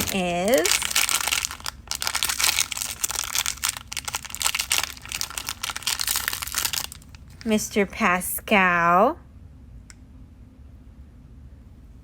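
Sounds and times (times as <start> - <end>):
toy packaging crinkling: 0.0 - 8.5.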